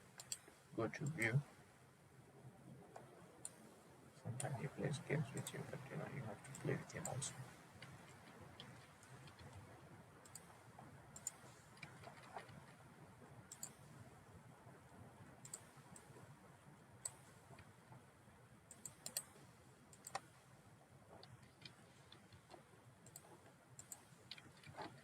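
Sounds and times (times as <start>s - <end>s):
faint steady hiss: 0.0s - 24.9s
computer mouse clicks: 0.1s - 1.4s, 4.3s - 12.8s, 13.5s - 13.9s, 15.4s - 16.2s, 17.0s - 17.8s, 18.7s - 20.4s, 21.1s - 25.0s.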